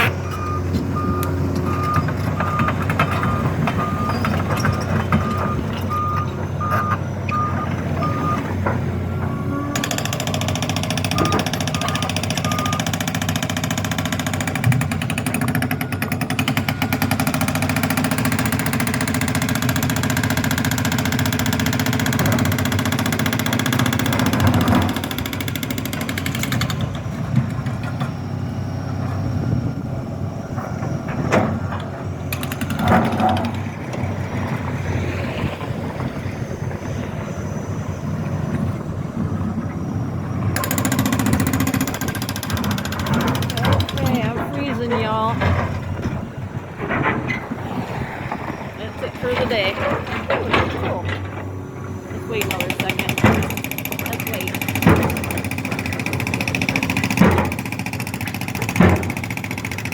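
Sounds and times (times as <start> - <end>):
diesel engine running: 0.0 - 59.9
jackhammer rattling: 9.8 - 27.3, 32.3 - 34.2, 40.6 - 47.4, 48.8 - 59.9
scattered knocks: 40.6 - 47.4, 52.2 - 59.9.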